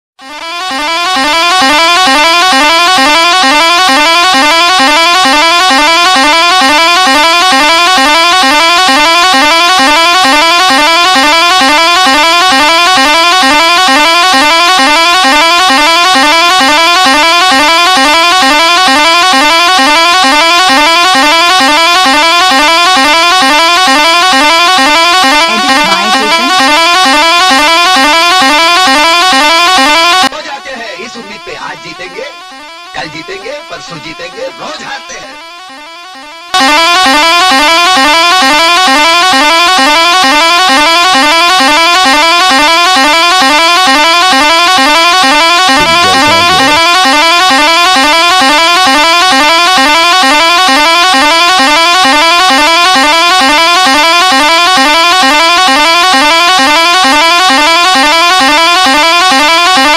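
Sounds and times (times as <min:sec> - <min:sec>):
bus musical horn: 0:00.3 - 0:30.2, 0:35.4 - 0:59.9.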